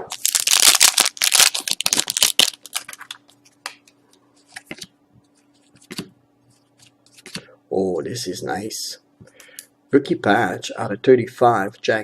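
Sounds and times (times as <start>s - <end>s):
foil wrapper tearing and crinkling: 0.0s - 3.2s.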